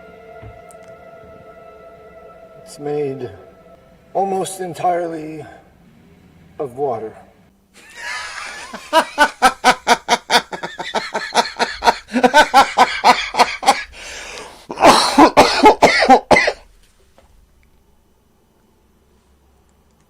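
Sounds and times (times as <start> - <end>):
man laughing hard: 7.8 - 14.0, 14.7 - 16.3.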